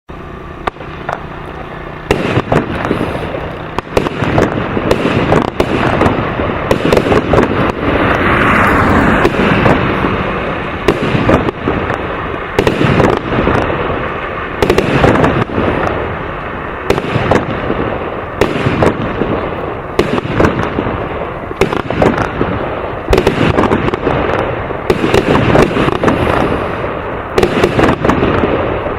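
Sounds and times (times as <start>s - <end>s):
firework bangs and crackling: 0.1s - 28.9s.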